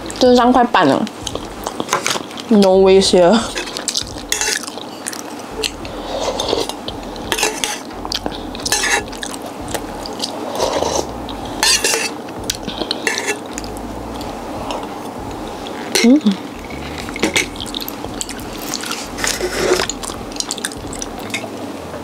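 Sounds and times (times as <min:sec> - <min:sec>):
food packaging rustling: 0:01.1 - 0:02.6
dishes and cutlery clinking: 0:03.5 - 0:09.4, 0:10.6 - 0:12.2, 0:12.8 - 0:13.7, 0:15.8 - 0:21.5.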